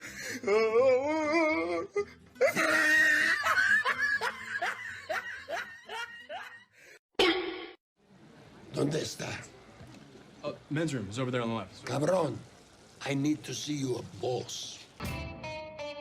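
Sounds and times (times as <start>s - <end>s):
person laughing: 2.4s - 6.6s.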